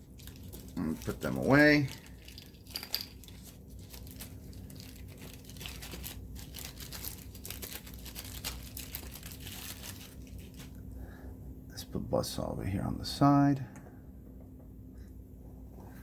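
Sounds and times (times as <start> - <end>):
plastic crinkling and rustling: 0.0 - 10.8.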